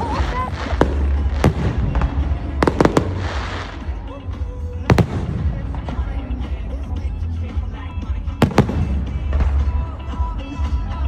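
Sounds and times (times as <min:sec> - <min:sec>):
firework shells bursting: 0:00.0 - 0:04.1, 0:04.9 - 0:06.3, 0:08.4 - 0:09.8
crowd chatter: 0:00.0 - 0:11.0
music: 0:00.0 - 0:11.0.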